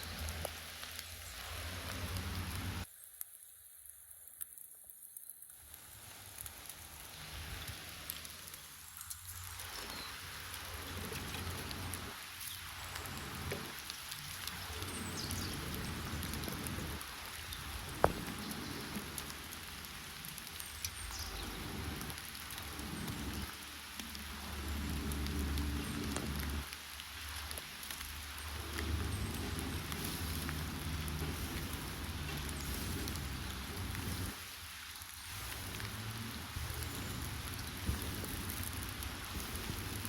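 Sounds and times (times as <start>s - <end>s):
campfire crackling and popping: 0.0s - 40.0s
loud sharp pop: 18.0s - 18.3s.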